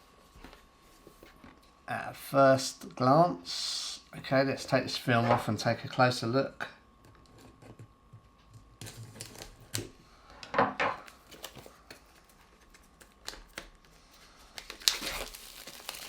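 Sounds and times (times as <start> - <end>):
fingers tapping plastic film: 7.2 - 10.0, 11.0 - 16.0
plastic film crinkling: 8.8 - 10.0, 11.0 - 16.0.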